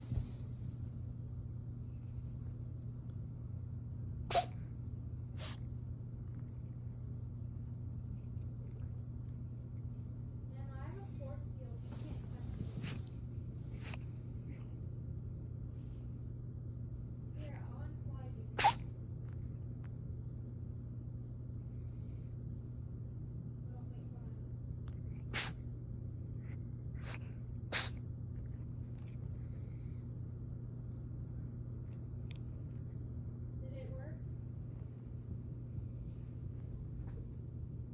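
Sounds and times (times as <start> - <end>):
cat sneezing: 4.3 - 4.7, 5.4 - 5.6, 12.8 - 13.0, 13.7 - 14.0, 18.6 - 18.9, 25.1 - 25.6, 26.4 - 28.0.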